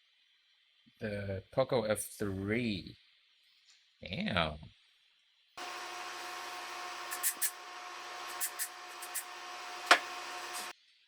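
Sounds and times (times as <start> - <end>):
machine hum with faint whine: 5.6 - 10.7.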